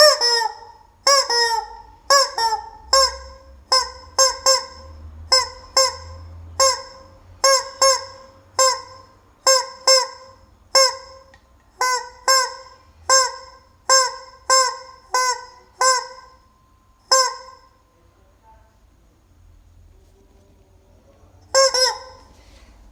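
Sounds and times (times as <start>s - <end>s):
rubber chicken toy squawking: 0.0s - 16.4s, 17.1s - 17.7s, 21.5s - 22.4s.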